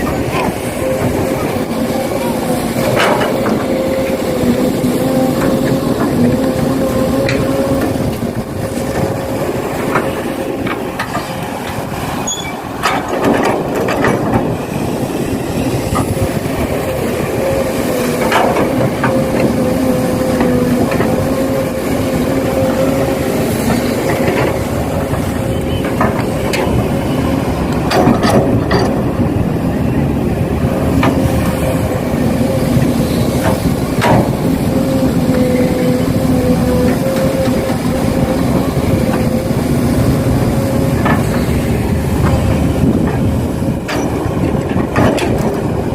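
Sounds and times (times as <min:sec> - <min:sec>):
clicks and knocks from machines: 0:42.2 - 0:45.7.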